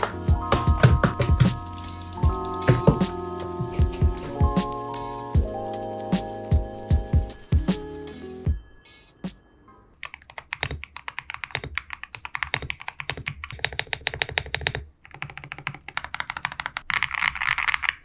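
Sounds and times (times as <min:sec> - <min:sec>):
fast typing on mechanical keyboard: 0:10.0 - 0:18.0.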